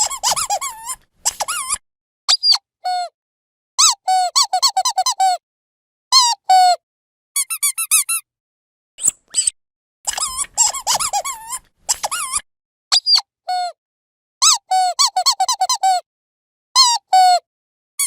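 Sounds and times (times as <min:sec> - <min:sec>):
dog squeaky toy squeaking: 0:00.0 - 0:02.6, 0:07.4 - 0:08.2, 0:10.1 - 0:12.4.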